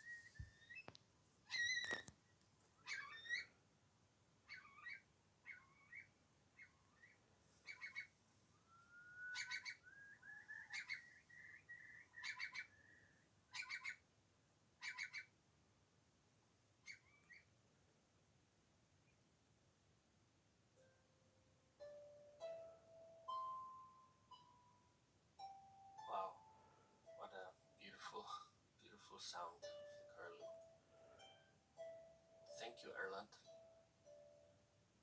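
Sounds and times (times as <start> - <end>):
curlew calling: 0.0 - 2.1, 2.8 - 3.5, 4.5 - 14.0, 14.8 - 15.3.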